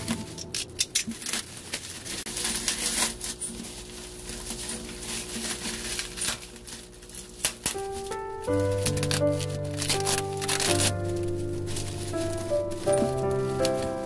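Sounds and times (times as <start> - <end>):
soft background music: 0.0 - 0.6, 7.6 - 14.0
small objects clicking and crinkling: 0.0 - 14.0.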